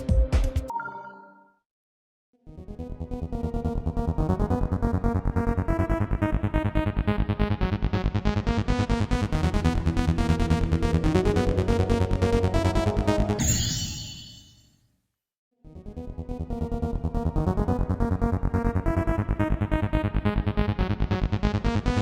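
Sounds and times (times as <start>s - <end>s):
electronic synthesizer music: 9.1s - 13.4s.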